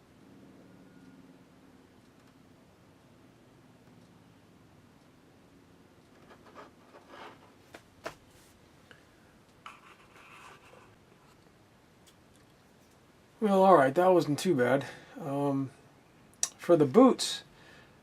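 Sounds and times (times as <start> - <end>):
small parts rubbing and scratching: 6.1 - 7.6.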